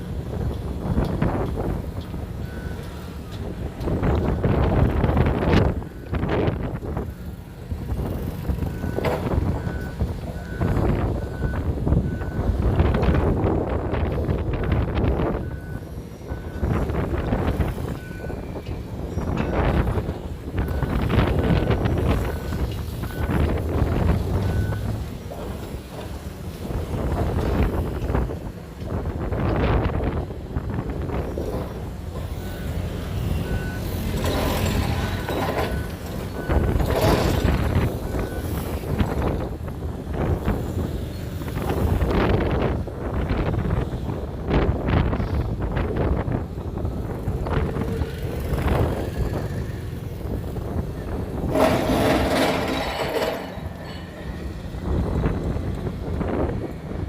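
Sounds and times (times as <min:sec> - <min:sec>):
heavy machinery rumble: 0:00.0 - 0:43.9, 0:45.0 - 0:57.0
reversing alarm beeping: 0:14.6 - 0:25.0, 0:32.2 - 0:39.4
loud rush of noise: 0:51.5 - 0:55.3.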